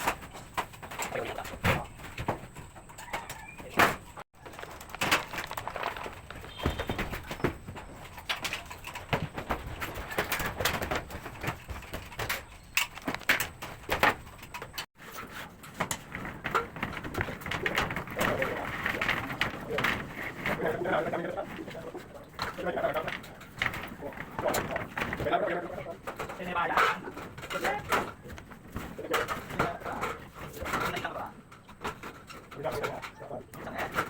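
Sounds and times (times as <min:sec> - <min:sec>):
irregular knocks and clicks: 0:00.0 - 0:14.9
doves cooing: 0:00.3 - 0:11.0.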